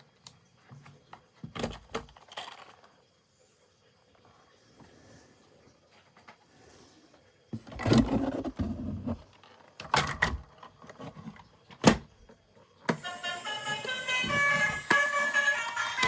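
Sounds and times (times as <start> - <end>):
plastic toys rustling and clattering: 0.5 - 3.0, 7.6 - 11.8
stepping melody tune: 12.9 - 16.0.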